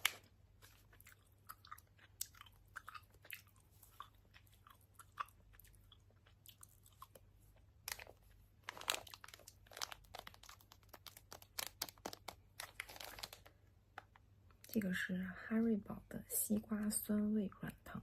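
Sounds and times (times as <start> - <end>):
chewing and lip-smacking: 0.1 - 8.1.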